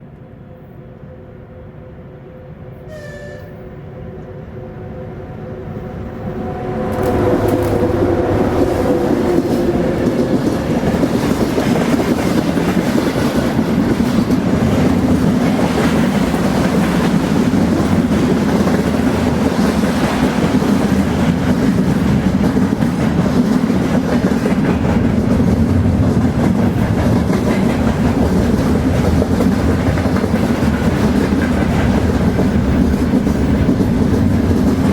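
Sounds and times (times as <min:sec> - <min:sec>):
freight train rumble: 0:00.0 - 0:34.9
train horn: 0:02.2 - 0:10.3.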